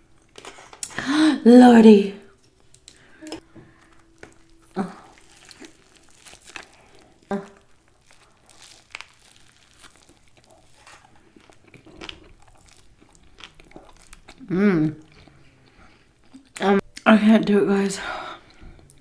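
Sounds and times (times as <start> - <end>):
paper food wrappers crinkling: 0.1 - 1.0, 2.4 - 14.4.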